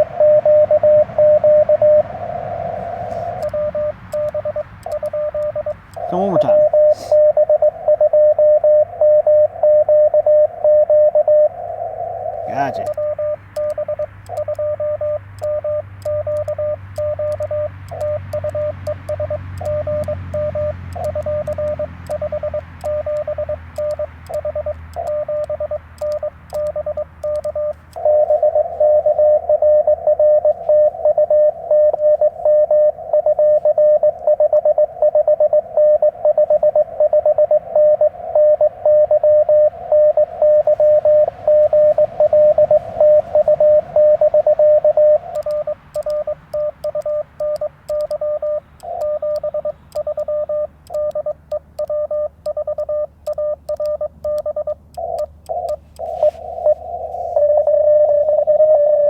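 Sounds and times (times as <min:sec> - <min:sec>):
morse code tones: 0:00.0 - 0:59.0
radio band noise hiss: 0:01.6 - 0:04.1, 0:05.8 - 0:07.3, 0:11.6 - 0:14.2, 0:40.3 - 0:44.0, 0:55.0 - 0:59.0.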